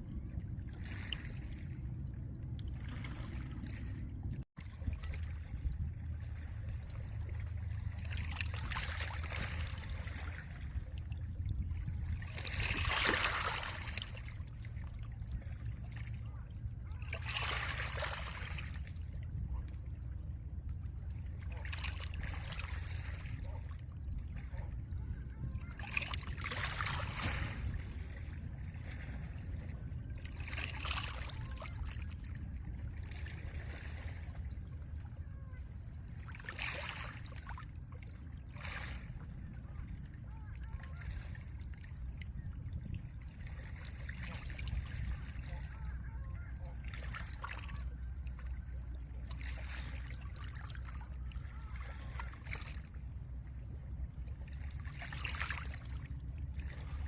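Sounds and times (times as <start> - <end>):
low rumble of wind: 0.0 - 57.0.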